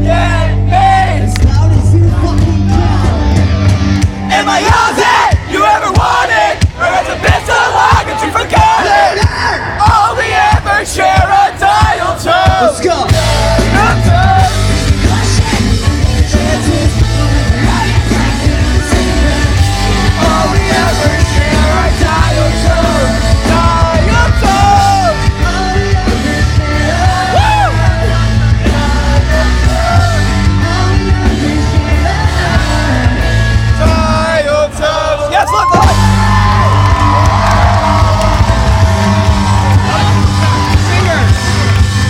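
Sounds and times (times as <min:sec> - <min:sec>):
live rock band playing: 0:00.0 - 0:07.4, 0:09.2 - 0:34.9, 0:35.6 - 0:42.0
person singing and shouting: 0:04.3 - 0:36.1.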